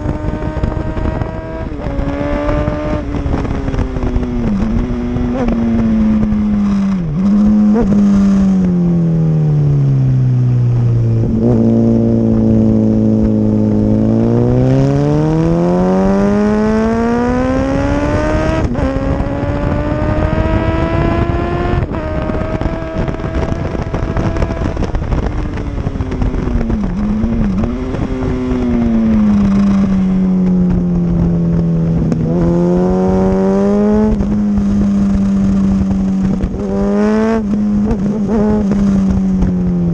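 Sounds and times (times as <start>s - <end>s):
motorcycle engine revving: 0.0s - 39.9s
wind rushing over microphone: 0.0s - 39.9s.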